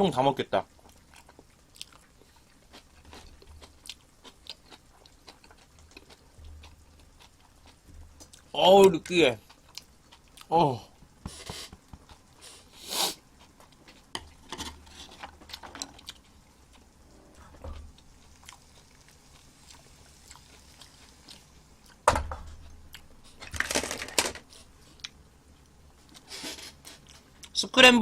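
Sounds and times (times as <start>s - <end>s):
chewing and mouth noises: 0.7s - 8.6s, 9.4s - 10.5s, 11.8s - 22.0s.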